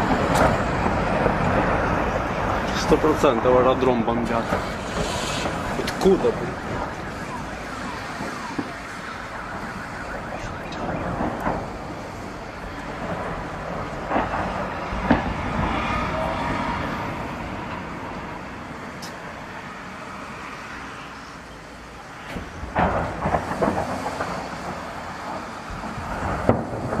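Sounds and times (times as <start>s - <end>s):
rocket explosions: 0.0s - 18.6s, 22.3s - 27.0s
wailing alarms: 4.4s - 18.4s.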